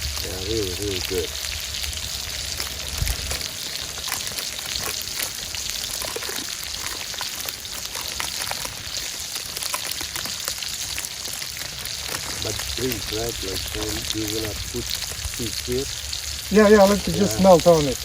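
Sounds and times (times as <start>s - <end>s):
burger patties sizzling: 0.0s - 18.0s
fat spitting and popping: 1.9s - 13.1s.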